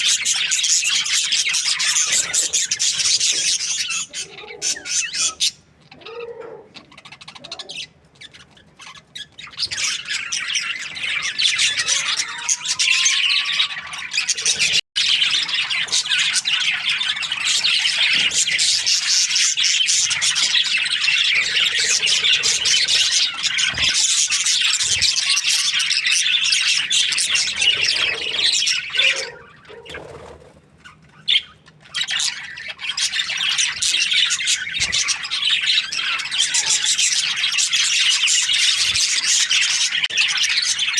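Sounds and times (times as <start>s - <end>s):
budgerigars chattering: 0.0s - 40.9s.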